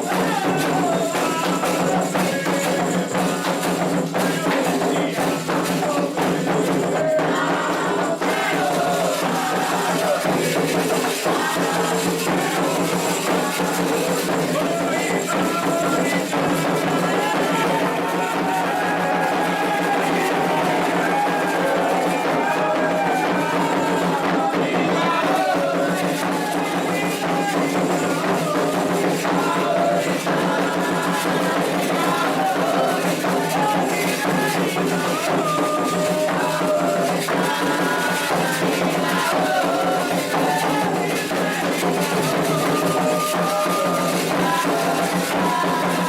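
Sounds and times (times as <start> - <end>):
rapid hand drumming: 0.0 - 46.0
voices singing: 0.0 - 46.0.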